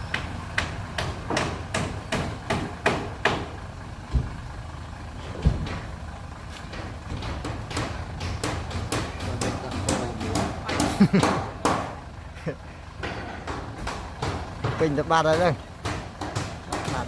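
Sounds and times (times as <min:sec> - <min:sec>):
diesel engine running: 0:00.0 - 0:17.0
heavy thuds: 0:03.0 - 0:04.5, 0:05.3 - 0:06.0
metallic clanks and knocks: 0:05.3 - 0:12.0, 0:12.9 - 0:17.0.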